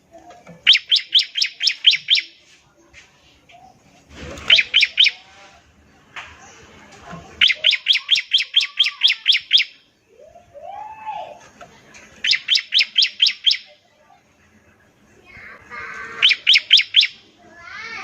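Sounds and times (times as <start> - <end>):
bird singing rapid sharp notes: 0.6 - 2.4, 4.4 - 5.3, 7.4 - 9.9, 12.2 - 13.8, 16.2 - 17.2
soft bird twittering: 0.6 - 2.5, 3.6 - 5.4, 7.4 - 10.6, 12.2 - 13.8, 16.2 - 17.2.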